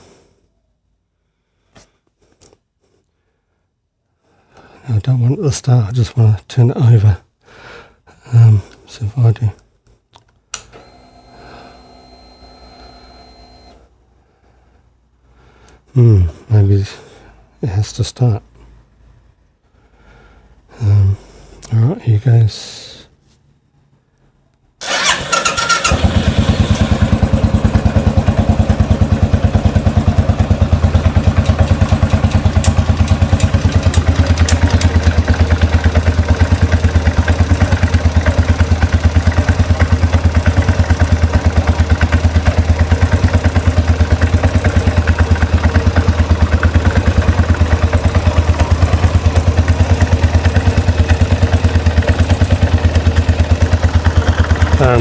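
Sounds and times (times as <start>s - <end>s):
engine clicking: 24.8s - 55.0s
motorcycle electric starter cranking: 24.8s - 55.0s
motorcycle engine thumping idle: 24.9s - 55.0s.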